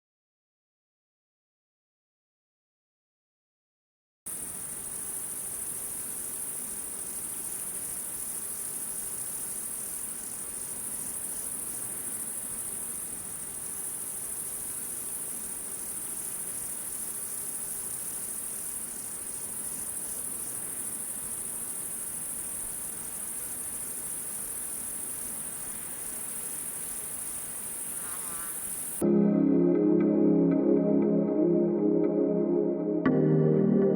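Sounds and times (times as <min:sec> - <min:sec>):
crickets chirping: 0:04.3 - 0:29.0.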